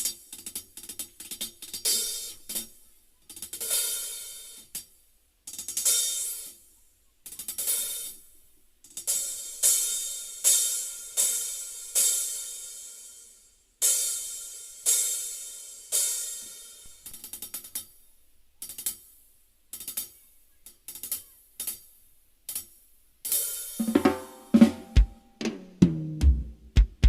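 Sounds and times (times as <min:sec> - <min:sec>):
hi-hat and snare hits: 0:00.0 - 0:04.8, 0:08.9 - 0:17.9, 0:22.5 - 0:27.0
kick drum: 0:24.7 - 0:25.2, 0:26.2 - 0:27.0.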